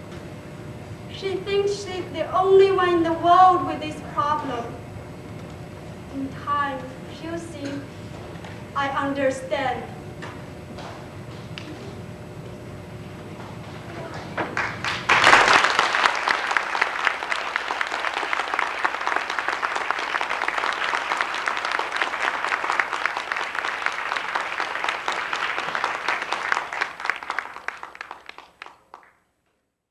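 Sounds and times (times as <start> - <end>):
audience applauding: 14.0 - 29.2.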